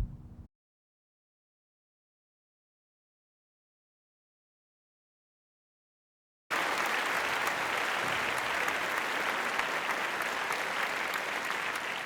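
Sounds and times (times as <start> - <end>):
crowd applauding: 6.5 - 12.0.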